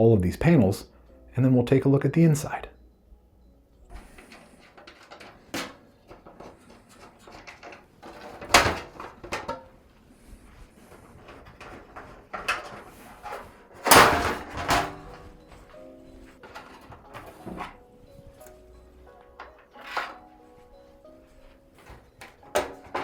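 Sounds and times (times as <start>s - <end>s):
panel clattering: 4.0s - 9.8s, 10.4s - 20.4s, 21.8s - 23.0s
computer case panels clicking: 4.1s - 9.8s, 10.9s - 15.7s, 16.3s - 17.8s, 21.8s - 23.0s.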